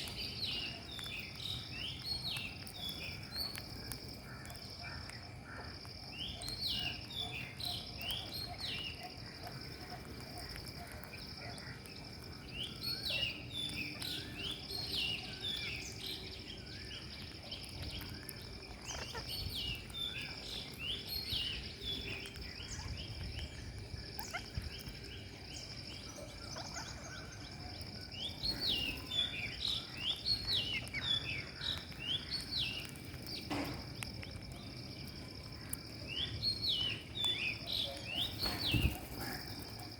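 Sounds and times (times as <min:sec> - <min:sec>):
parakeets chirping: 0:17.0 - 0:23.2, 0:24.2 - 0:25.0, 0:25.7 - 0:34.5, 0:35.1 - 0:39.9.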